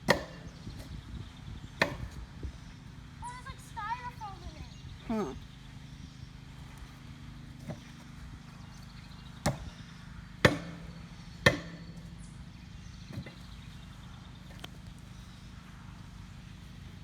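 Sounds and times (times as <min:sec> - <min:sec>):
hand tool striking metal tank: 0:00.1 - 0:00.5, 0:10.4 - 0:12.0.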